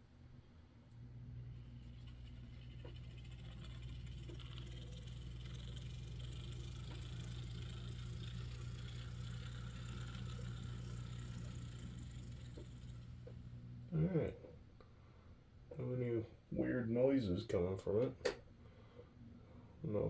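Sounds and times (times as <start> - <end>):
model train motor whirring: 1.6 - 13.6.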